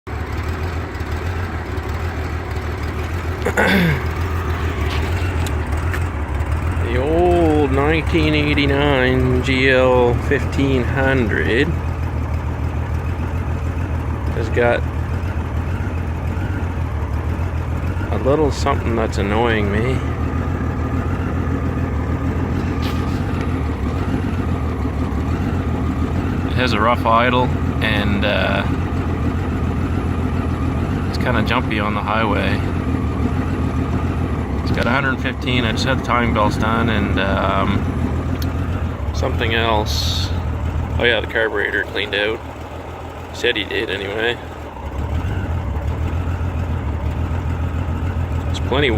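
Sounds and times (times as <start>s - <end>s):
motorcycle engine idling roughly: 0.1s - 48.9s.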